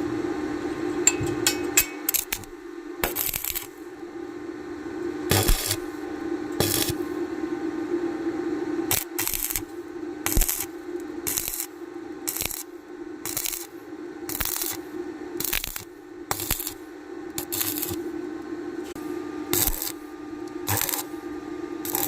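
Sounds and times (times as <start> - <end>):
electrical hum: 0.0 - 22.0
welding arc crackling: 1.4 - 3.9, 5.3 - 6.0, 6.6 - 7.1, 8.9 - 18.1, 19.5 - 21.2.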